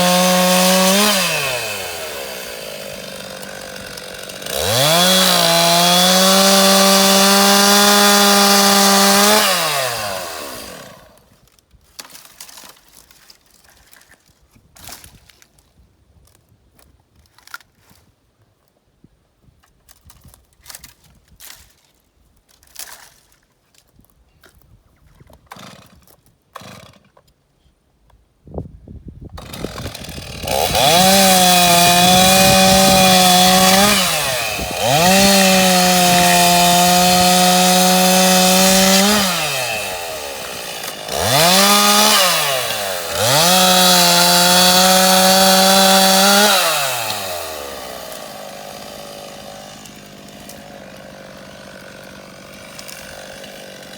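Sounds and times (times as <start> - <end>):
chainsaw cutting wood: 0.0 - 11.4, 25.5 - 27.2, 29.3 - 53.9.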